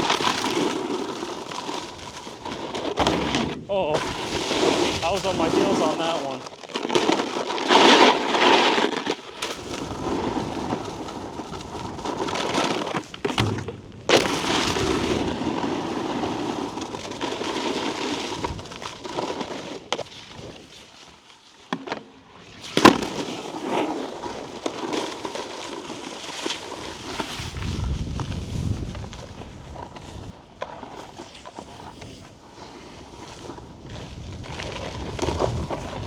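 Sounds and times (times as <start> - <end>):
snowboard knocks: 0.0 - 8.7, 9.4 - 18.5
snowboard scraping over icy snow: 0.0 - 36.0.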